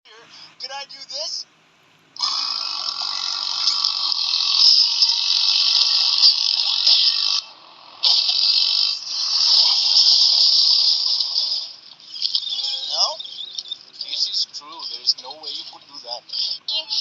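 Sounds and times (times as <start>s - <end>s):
raspy burps: 2.2s - 4.8s.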